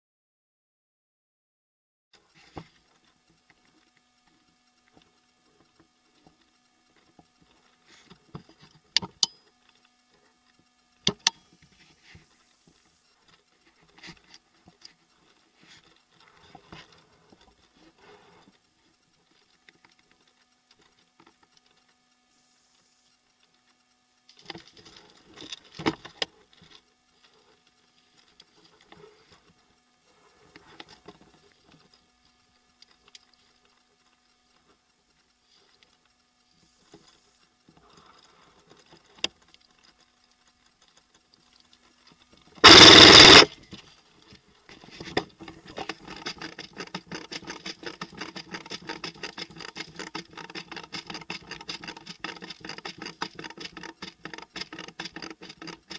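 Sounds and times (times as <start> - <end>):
faint steady hum: 2.2 - 55.9
sharp clicks or knocks: 42.6 - 43.5.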